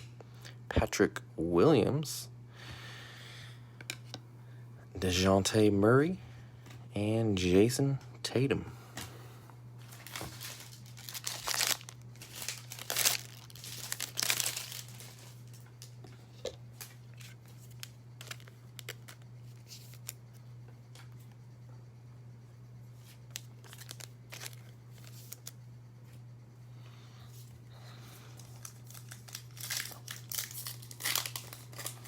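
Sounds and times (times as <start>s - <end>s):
foil wrapper tearing and crinkling: 9.9s - 15.9s, 16.8s - 20.2s, 23.2s - 25.6s, 28.4s - 32.0s.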